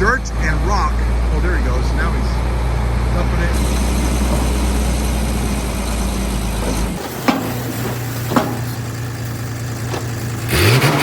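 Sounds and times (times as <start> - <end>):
lorry engine running: 0.0 - 11.0
dirt and rock dumping: 3.6 - 11.0
sharp metal clanks: 6.6 - 11.0.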